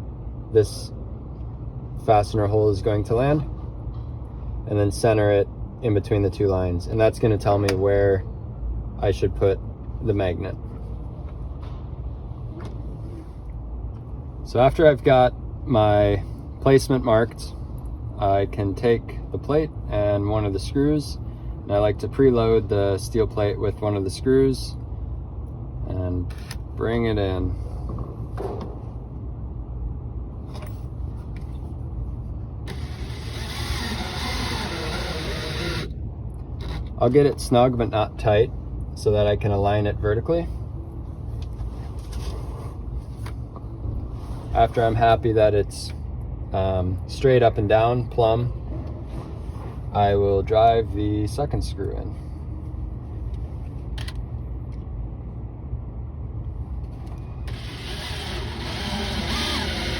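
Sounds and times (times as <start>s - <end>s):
steady low rumble: 0.0s - 59.9s
screw creaking and ratcheting: 32.7s - 35.9s, 57.5s - 59.9s
power drill motor whirring: 32.7s - 36.0s, 36.6s - 37.0s, 57.4s - 59.9s.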